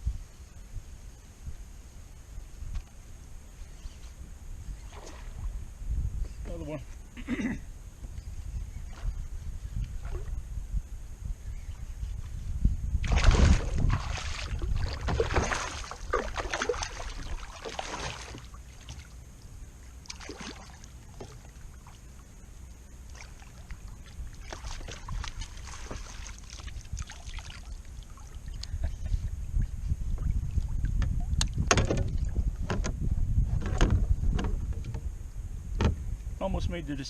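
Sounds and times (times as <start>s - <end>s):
knocks and rattles on kayak: 13.0s - 18.6s, 24.1s - 27.1s, 28.6s - 35.1s, 35.7s - 36.2s.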